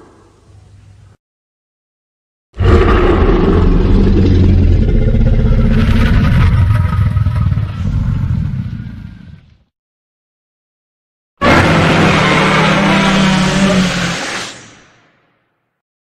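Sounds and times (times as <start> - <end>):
heavy low rumbling: 2.6 - 9.3.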